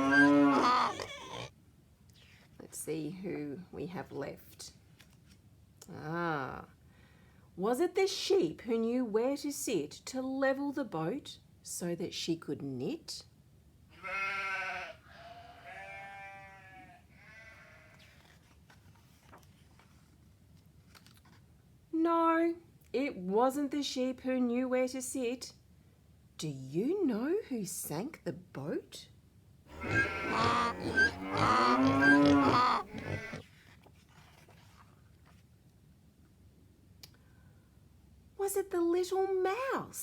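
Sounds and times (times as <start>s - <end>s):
farm animal calls: 0.0s - 1.5s, 29.7s - 33.4s
sheep bleating: 0.0s - 1.5s, 14.0s - 18.0s, 29.7s - 33.4s.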